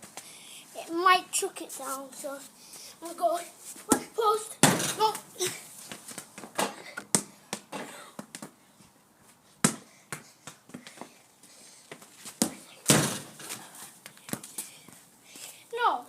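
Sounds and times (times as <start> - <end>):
football being kicked: 9.6 - 10.2, 12.4 - 13.3.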